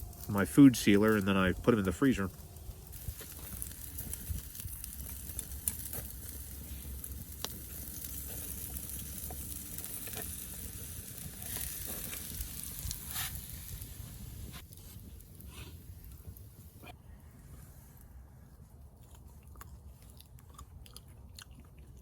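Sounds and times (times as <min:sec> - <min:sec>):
meat sizzling on a grate: 0:00.0 - 0:16.4
campfire wood popping and crackling: 0:00.0 - 0:16.9.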